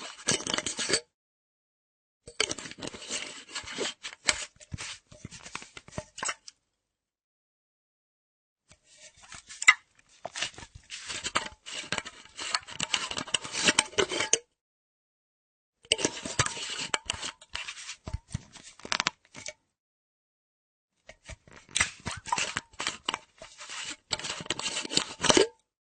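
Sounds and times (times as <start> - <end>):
metal screw cap scraping and clicking: 0.0 - 1.1, 2.3 - 6.6, 8.7 - 14.5, 15.9 - 19.6, 21.1 - 25.6.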